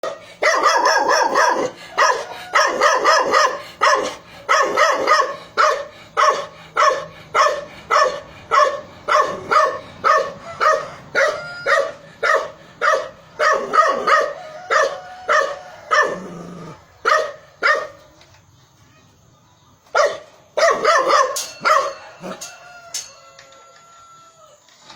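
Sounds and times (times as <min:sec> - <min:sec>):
dog barking sharply: 0:00.4 - 0:16.2, 0:20.0 - 0:22.0.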